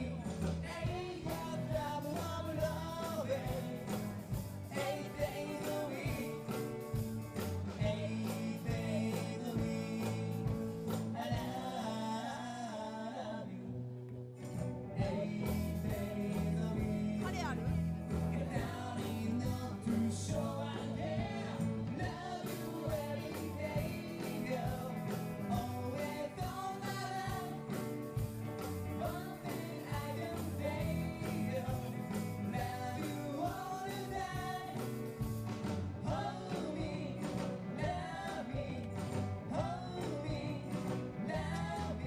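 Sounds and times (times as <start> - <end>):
live band playing: 0.0 - 12.2, 14.4 - 42.0
person singing: 15.0 - 27.8, 28.9 - 35.0, 36.0 - 42.0.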